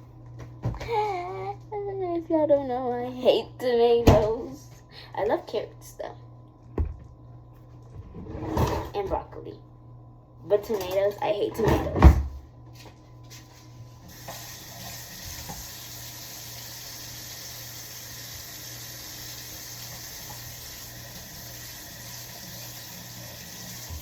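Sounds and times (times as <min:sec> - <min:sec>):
water tap running: 0:14.1 - 0:24.0.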